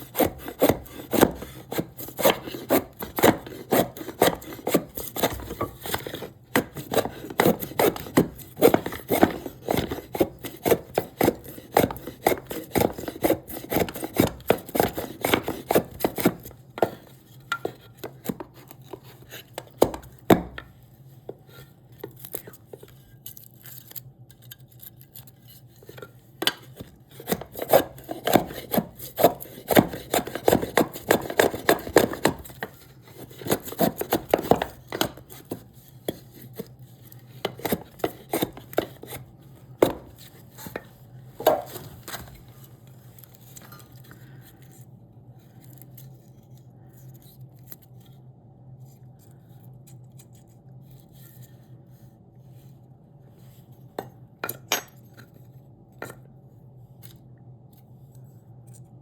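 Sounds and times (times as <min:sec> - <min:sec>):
chisel knocking on wood: 0:00.0 - 0:17.8.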